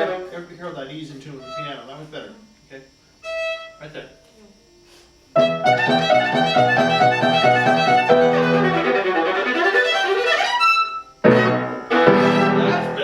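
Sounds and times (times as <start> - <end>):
bowed viola: 0.0 - 0.5, 1.2 - 2.0, 3.2 - 4.0, 5.4 - 13.0.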